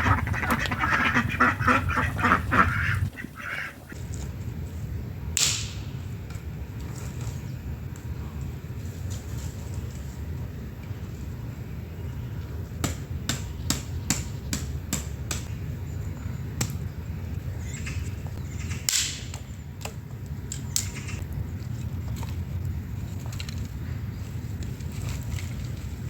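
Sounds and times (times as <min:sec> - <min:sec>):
steady low rumble: 0:00.0 - 0:12.8.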